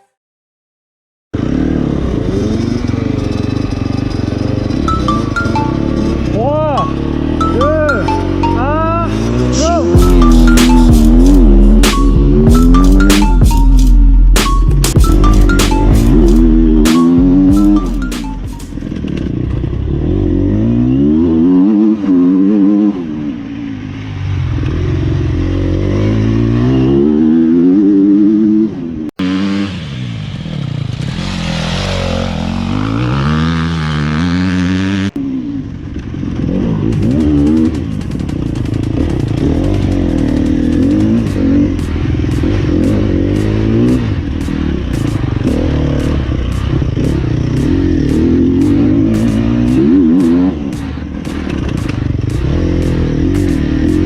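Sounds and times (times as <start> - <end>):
motorcycle engine revving: 1.4 - 54.0.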